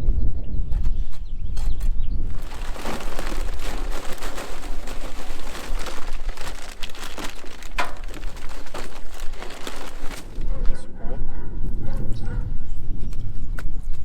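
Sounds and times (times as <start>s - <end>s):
wind rumble on microphone: 0.0s - 14.0s
crinkling handling noise: 2.2s - 10.8s.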